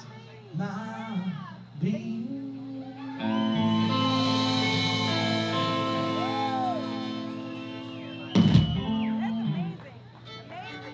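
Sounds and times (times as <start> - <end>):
rock band final chord: 3.2 - 9.6.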